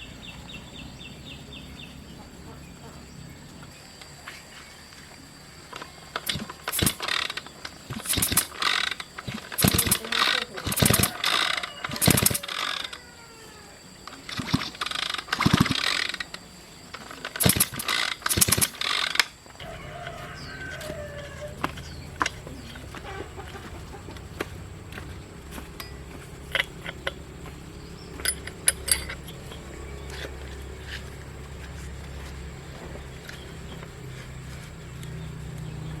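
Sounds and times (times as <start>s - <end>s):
metal clattering of hand tools: 5.7s - 13.0s, 14.1s - 34.4s
low hum: 19.6s - 36.0s.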